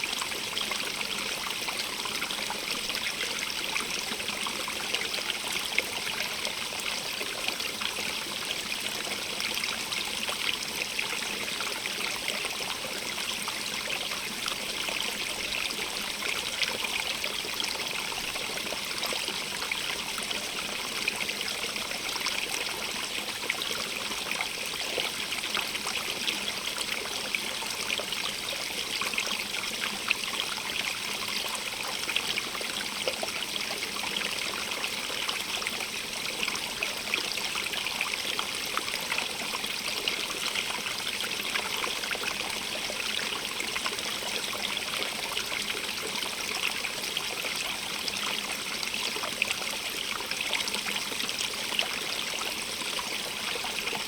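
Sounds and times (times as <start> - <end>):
stream running over stones: 0.0 - 54.0.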